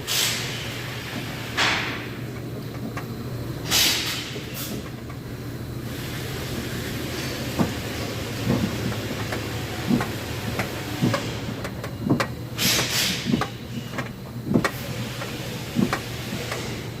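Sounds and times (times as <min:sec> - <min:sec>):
car door knocking and rattling: 0:07.5 - 0:12.4, 0:13.3 - 0:14.8.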